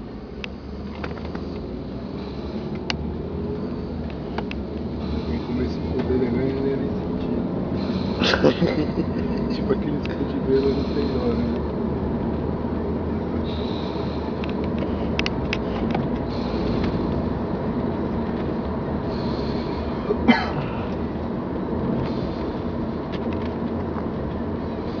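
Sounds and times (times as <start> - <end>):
steady low rumble: 0.0 - 25.0
sharp cough-like sound: 20.2 - 20.7.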